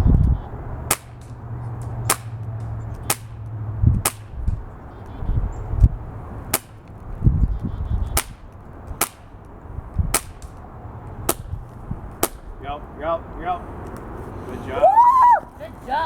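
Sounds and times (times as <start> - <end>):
low rumbles: 0.0 - 15.7
pistol shots snapping: 0.9 - 4.7, 6.5 - 7.1, 8.1 - 12.5.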